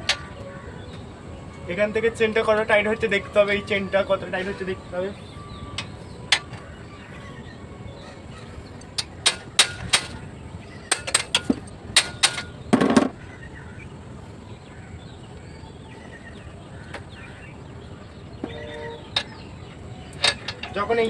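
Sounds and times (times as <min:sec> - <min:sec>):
tools clicking and knocking: 0:08.9 - 0:10.3, 0:10.9 - 0:13.1, 0:20.1 - 0:20.8.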